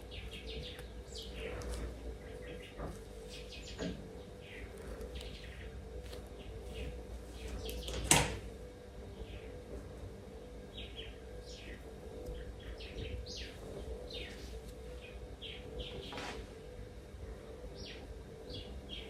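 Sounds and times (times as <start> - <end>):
birds chirping: 0.0 - 19.0
faint steady hum: 0.0 - 19.0.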